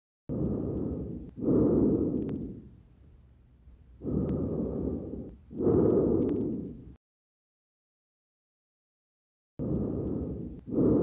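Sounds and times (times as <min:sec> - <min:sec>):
breathing through a stethoscope: 0:00.3 - 0:02.8, 0:04.0 - 0:07.0, 0:09.6 - 0:11.0.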